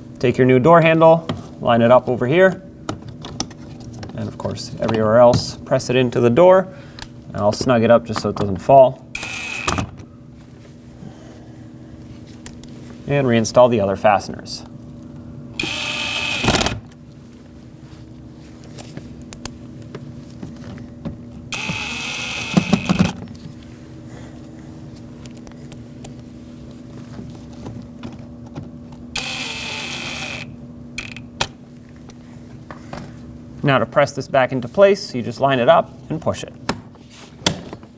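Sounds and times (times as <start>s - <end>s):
cordless power driver running: 9.2s - 10.0s, 15.6s - 16.9s, 21.5s - 23.2s, 29.1s - 31.5s.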